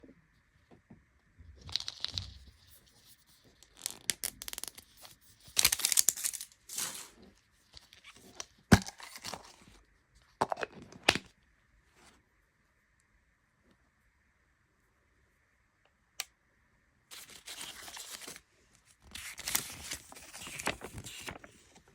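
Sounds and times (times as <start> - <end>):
plastic packaging crinkling: 5.5 - 7.2.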